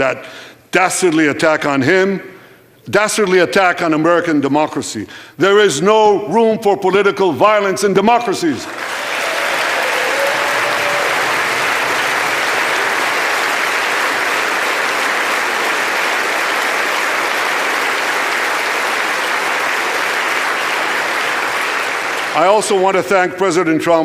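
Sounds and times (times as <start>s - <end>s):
audience applauding: 8.7s - 22.9s.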